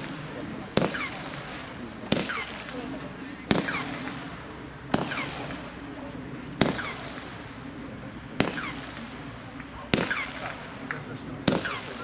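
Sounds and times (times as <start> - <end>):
firework pops: 0.0 - 4.2, 6.3 - 7.7, 8.4 - 12.0.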